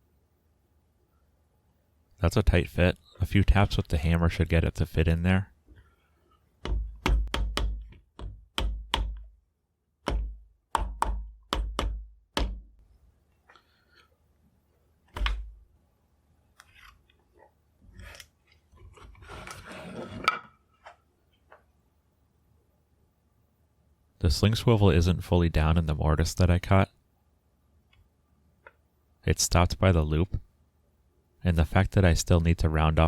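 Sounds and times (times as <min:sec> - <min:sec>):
hammer tapping metal into wood: 0:06.6 - 0:09.3, 0:10.0 - 0:12.6.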